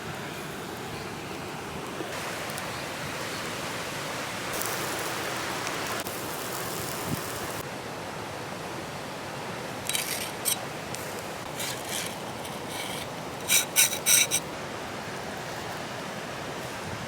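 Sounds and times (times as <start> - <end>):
short crisp scraping: 9.9 - 10.6, 11.4 - 14.5.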